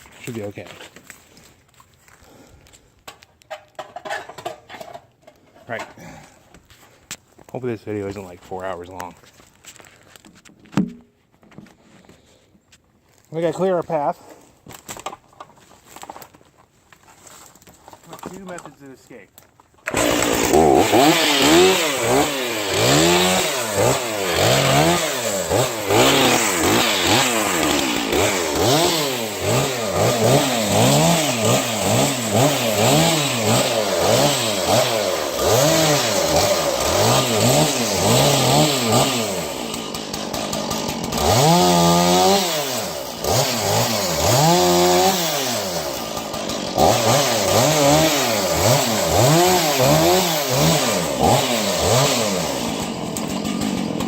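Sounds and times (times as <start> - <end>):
chainsaw revving: 19.8 - 54.0.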